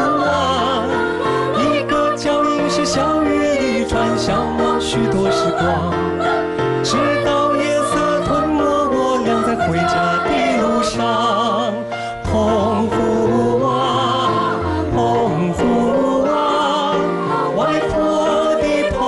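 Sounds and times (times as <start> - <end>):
man singing with vibrato: 0.0 - 6.0, 6.9 - 19.0.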